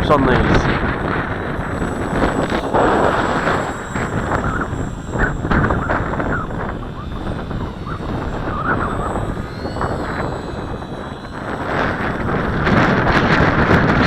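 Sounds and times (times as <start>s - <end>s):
model plane motor and propeller: 0.0s - 14.0s
wind rush on microphone: 0.0s - 14.0s.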